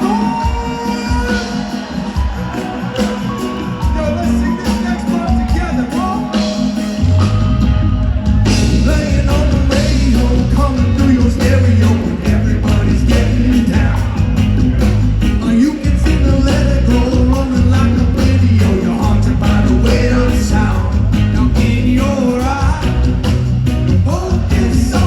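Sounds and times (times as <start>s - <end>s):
reggae band playing: 0.0s - 25.0s
person singing: 8.0s - 25.0s.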